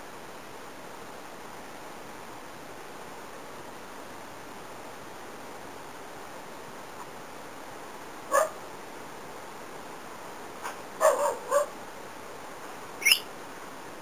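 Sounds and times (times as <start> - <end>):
high-pitched animal calls: 13.0 - 13.3.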